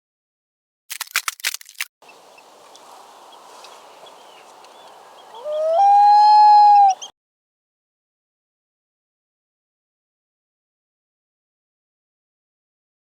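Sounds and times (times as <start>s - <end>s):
sharp clicks: 0.9s - 1.9s
high bird chirps: 2.0s - 7.1s
loud drawn-out animal call: 4.9s - 7.1s.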